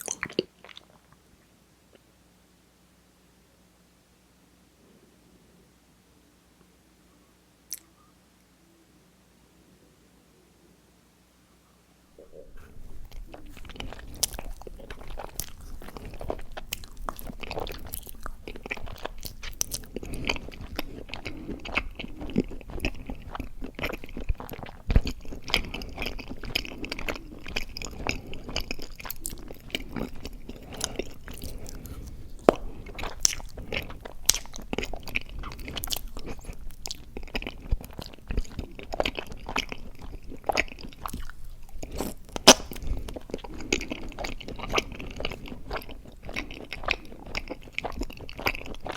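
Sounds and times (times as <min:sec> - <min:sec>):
wet chewing sounds: 0:12.2 - 0:48.9.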